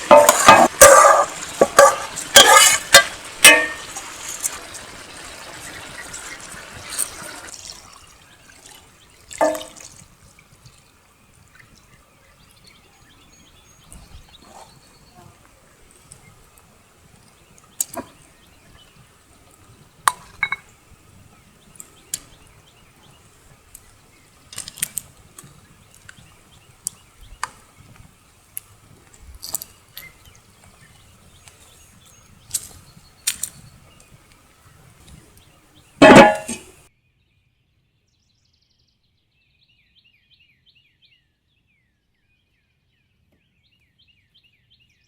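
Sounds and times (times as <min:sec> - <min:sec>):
metal utensils clinking on pan: 0:00.0 - 0:07.8, 0:09.4 - 0:09.8, 0:20.1 - 0:20.7, 0:36.0 - 0:36.8.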